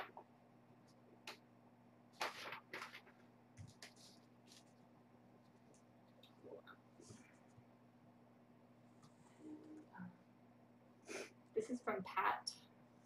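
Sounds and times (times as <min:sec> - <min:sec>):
paper package rustling: 0:02.2 - 0:05.8.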